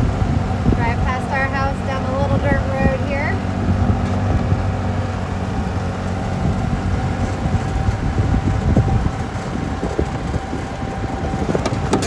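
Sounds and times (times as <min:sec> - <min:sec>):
golf cart motor hum: 0:00.0 - 0:12.0
wheels knocking on rough ground: 0:00.0 - 0:12.0.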